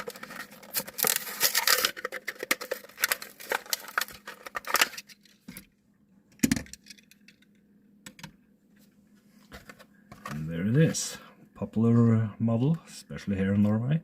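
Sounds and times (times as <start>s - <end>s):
plastic and cardboard crinkling: 0.0s - 5.6s.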